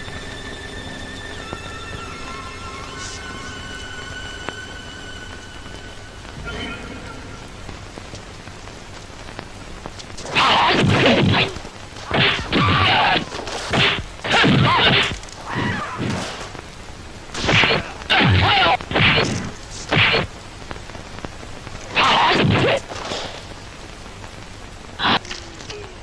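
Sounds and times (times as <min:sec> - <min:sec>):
whooshing smacking fight blows: 0:10.1 - 0:15.2.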